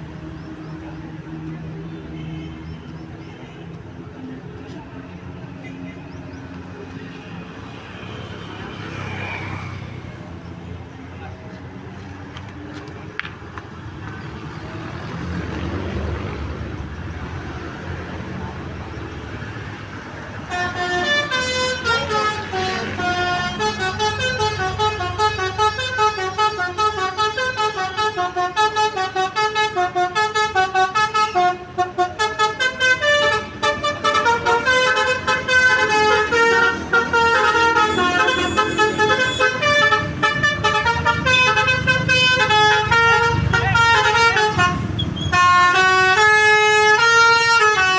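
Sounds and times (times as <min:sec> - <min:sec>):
multi-tone horn melody: 0:20.4 - 0:47.9.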